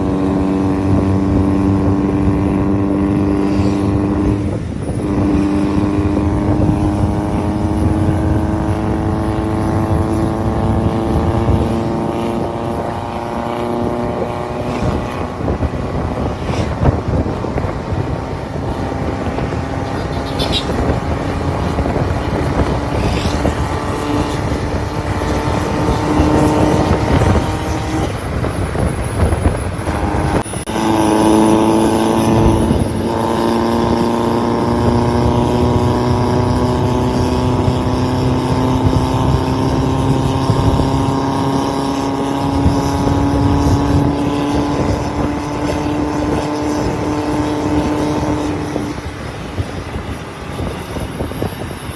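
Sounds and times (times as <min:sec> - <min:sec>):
diesel engine running under load: 0:00.0 - 0:51.9.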